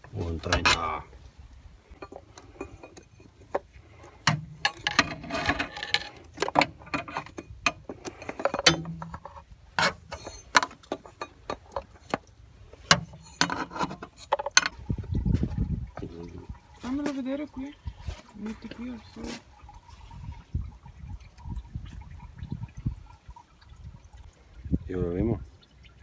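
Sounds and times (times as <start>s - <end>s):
rattling: 0.0s - 15.0s
hand tools and metal clinking: 0.0s - 15.5s.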